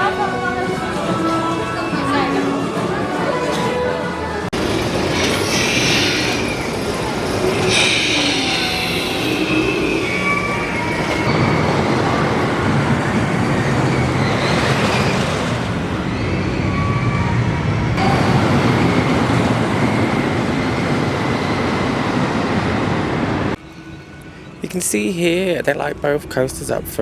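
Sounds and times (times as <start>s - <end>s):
roller coaster rumbling on wooden track: 4.6s - 23.6s.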